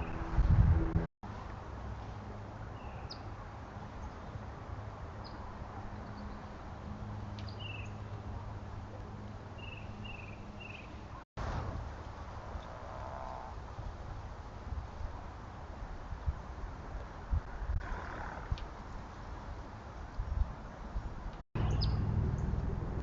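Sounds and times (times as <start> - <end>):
low hum: 21.6 - 23.0.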